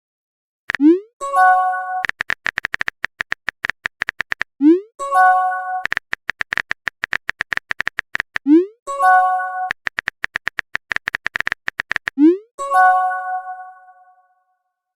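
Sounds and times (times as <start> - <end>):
phone keyboard typing clicks: 2.0 - 4.6, 5.8 - 8.5, 9.7 - 12.2.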